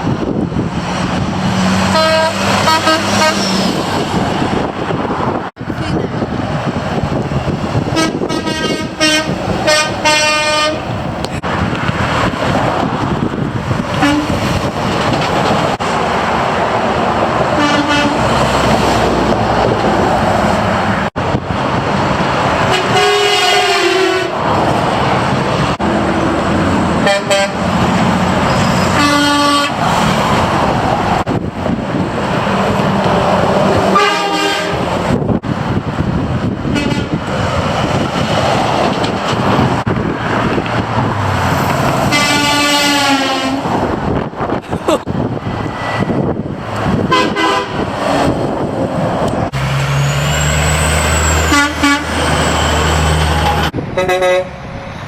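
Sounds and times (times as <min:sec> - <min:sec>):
road traffic: 0:00.0 - 0:55.0
truck air horn blasts: 0:01.9 - 0:03.6, 0:08.0 - 0:10.9, 0:14.0 - 0:14.4, 0:17.6 - 0:18.3, 0:22.7 - 0:24.4, 0:27.0 - 0:27.6, 0:28.5 - 0:29.8, 0:33.9 - 0:34.9, 0:36.7 - 0:37.2, 0:42.1 - 0:43.7, 0:47.1 - 0:47.9, 0:51.4 - 0:52.2, 0:53.5 - 0:54.6.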